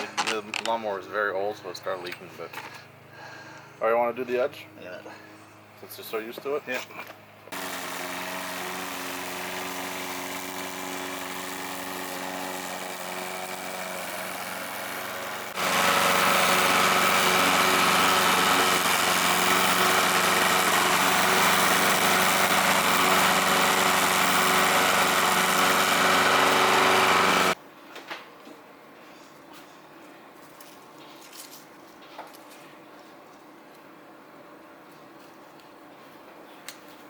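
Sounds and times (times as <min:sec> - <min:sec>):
small petrol engine running: 0:07.5 - 0:27.6.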